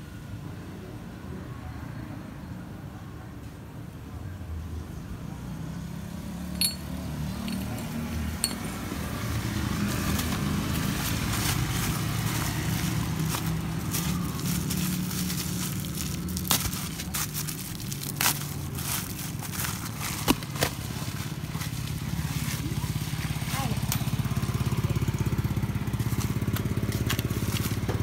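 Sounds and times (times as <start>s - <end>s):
small metal parts clinking: 6.5s - 8.9s.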